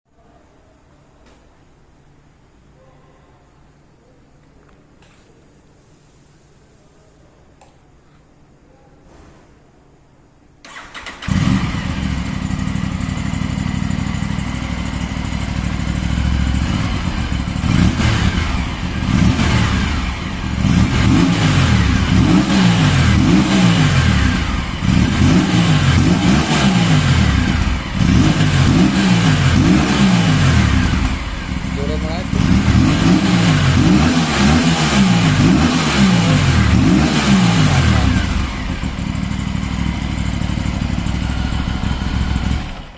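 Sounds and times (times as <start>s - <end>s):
motorcycle engine idling: 10.7s - 33.9s, 37.6s - 42.9s
engine revving in throttle blips: 15.5s - 39.3s.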